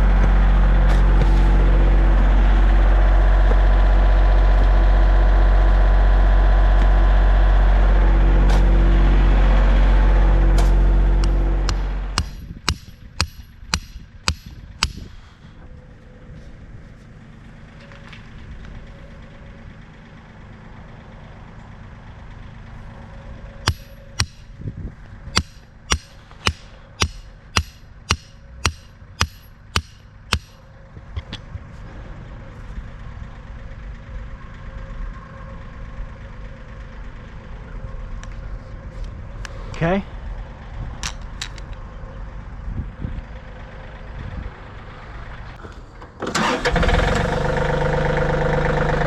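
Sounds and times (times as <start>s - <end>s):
engine idling: 0.0s - 49.0s
sharp knocks: 10.6s - 15.1s, 23.7s - 24.5s, 25.4s - 30.6s.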